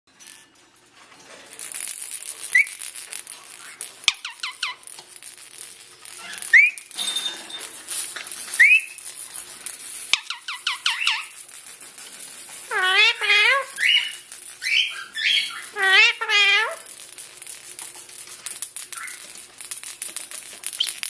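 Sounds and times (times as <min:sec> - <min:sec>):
parrot chirping: 0:02.5 - 0:02.8, 0:03.4 - 0:04.9, 0:06.1 - 0:07.0, 0:08.6 - 0:09.2, 0:09.8 - 0:11.4, 0:12.7 - 0:16.9, 0:18.9 - 0:19.4, 0:20.8 - 0:21.0
parrot whistling: 0:06.2 - 0:06.9, 0:08.6 - 0:09.0, 0:12.7 - 0:16.8.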